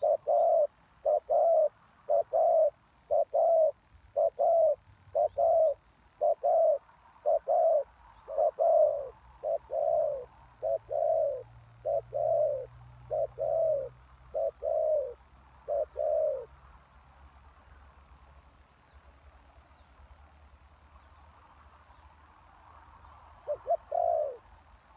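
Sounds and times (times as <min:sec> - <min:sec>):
dove cooing: 0:00.0 - 0:16.6, 0:23.4 - 0:24.5.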